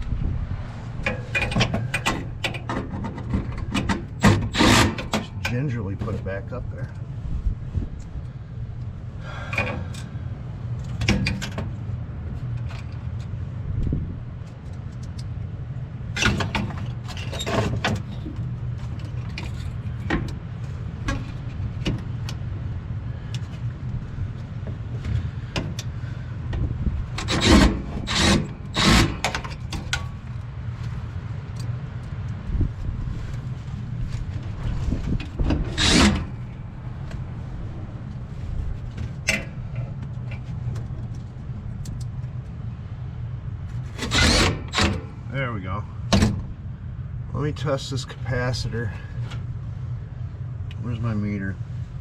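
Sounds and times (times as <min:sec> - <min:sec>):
steady low hum: 0:00.0 - 0:52.0
metal clunks and scrapes: 0:00.9 - 0:06.9, 0:09.4 - 0:10.2, 0:10.8 - 0:13.4, 0:16.1 - 0:22.5, 0:24.4 - 0:30.4, 0:33.2 - 0:41.4, 0:43.7 - 0:45.2.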